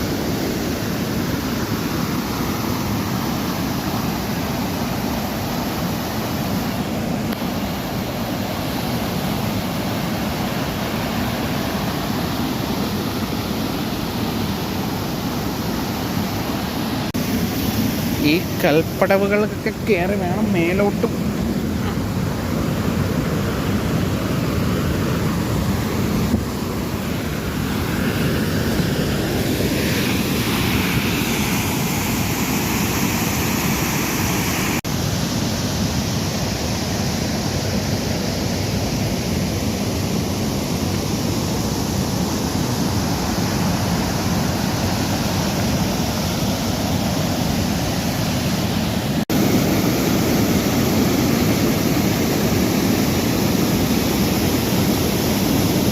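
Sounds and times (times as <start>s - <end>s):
waterfall and river rushing: 0.0s - 55.9s.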